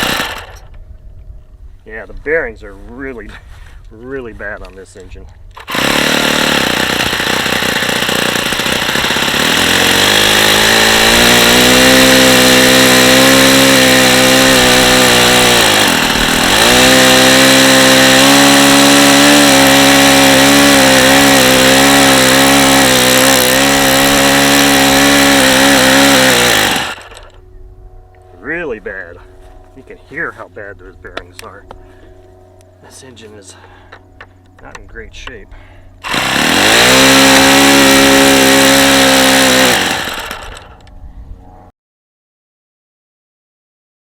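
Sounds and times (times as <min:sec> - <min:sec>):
model engine running at high revs: 0:00.0 - 0:00.6, 0:05.6 - 0:27.3, 0:36.0 - 0:40.7.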